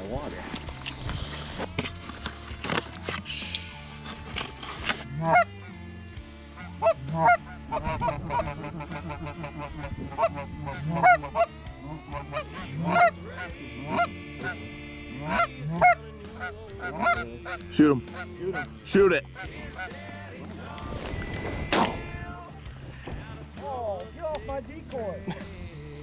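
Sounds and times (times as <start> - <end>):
geese honking: 2.6 - 23.4.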